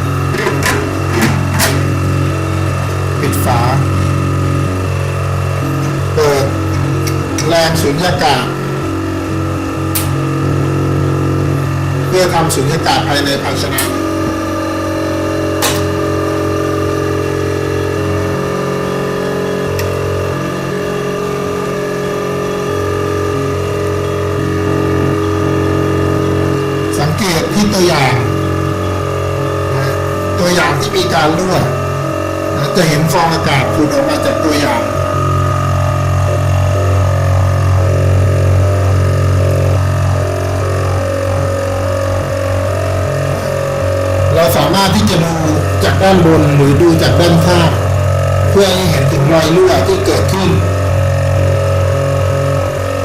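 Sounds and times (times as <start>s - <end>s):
vacuum pump running: 0.0s - 53.0s
sharp click: 9.9s - 10.2s, 15.6s - 16.0s.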